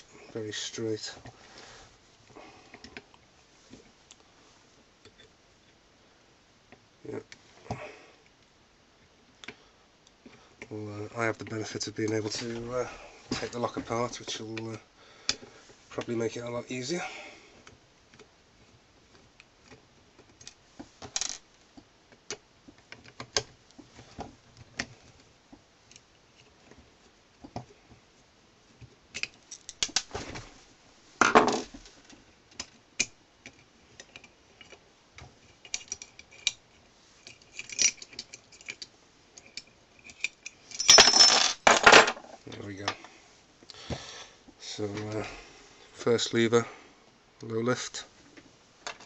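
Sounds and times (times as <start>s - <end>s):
small metal lock parts clicking: 29.1s - 30.1s, 35.4s - 41.2s
metal parts clattering: 37.3s - 42.3s.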